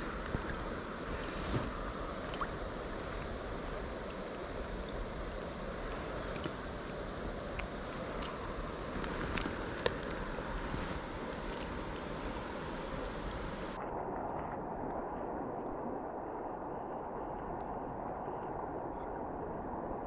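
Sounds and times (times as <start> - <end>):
stream water flowing: 0.0 - 15.5.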